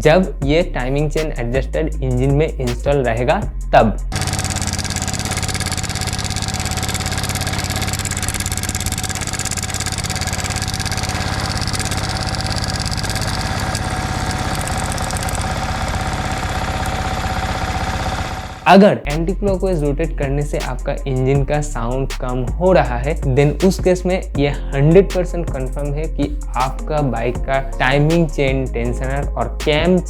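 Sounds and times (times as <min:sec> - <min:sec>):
fast ticking clatter: 0:04.1 - 0:18.6
motorcycle engine idling: 0:04.1 - 0:18.6.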